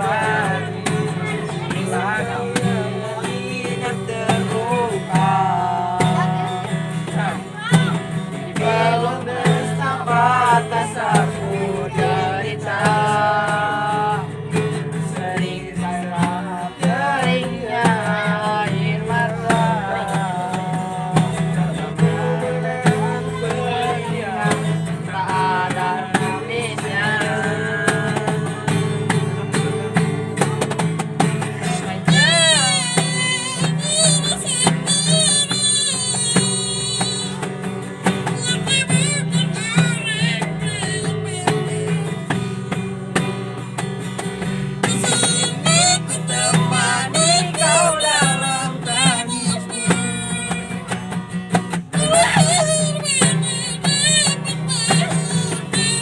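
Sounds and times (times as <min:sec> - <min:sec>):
person singing: 0:00.0 - 0:28.9, 0:31.4 - 0:42.5, 0:44.7 - 0:51.2, 0:51.8 - 0:56.0
plucked guitar: 0:00.0 - 0:56.0
high wobbling voice: 0:31.6 - 0:37.4, 0:38.3 - 0:42.2, 0:44.8 - 0:51.0, 0:51.9 - 0:56.0.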